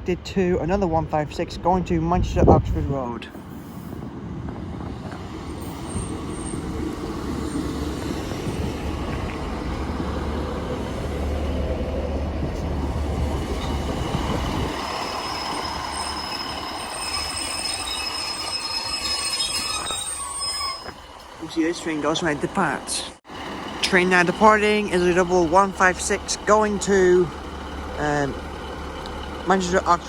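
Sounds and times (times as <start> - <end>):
diesel train rumbling: 0.0 - 30.0
brake squeal: 5.4 - 9.4, 13.5 - 22.2.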